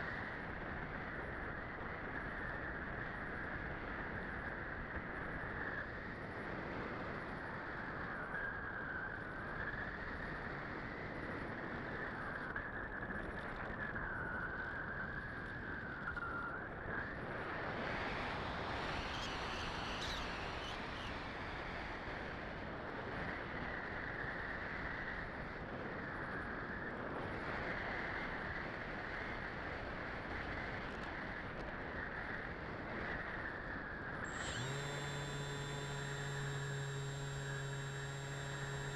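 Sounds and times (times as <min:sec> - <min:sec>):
electric motor and propeller buzzing: 0:17.8 - 0:21.4, 0:33.1 - 0:38.9.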